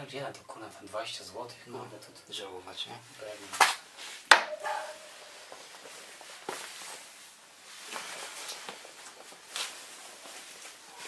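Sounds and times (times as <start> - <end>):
metal clank with ringing: 4.4 - 5.3.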